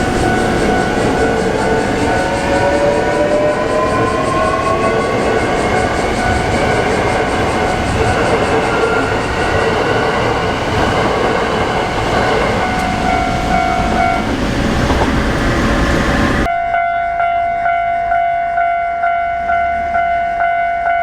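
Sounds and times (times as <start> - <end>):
steady tone: 0.0 - 16.5
train wheels rumbling: 0.0 - 16.5
level crossing warning bell: 0.0 - 21.0.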